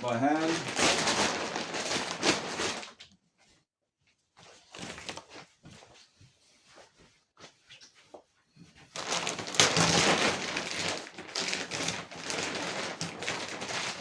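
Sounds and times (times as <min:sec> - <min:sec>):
plastic sheeting ripping: 0:00.0 - 0:03.0, 0:08.9 - 0:14.0
plastic crinkling and rustling: 0:00.0 - 0:03.2, 0:04.4 - 0:06.2, 0:07.7 - 0:14.0.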